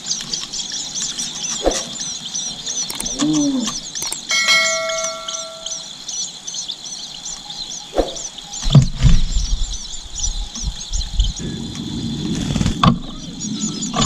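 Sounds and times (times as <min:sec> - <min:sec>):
nestling birds chirping: 0:00.0 - 0:14.0
low thuds and rumble: 0:08.6 - 0:14.0.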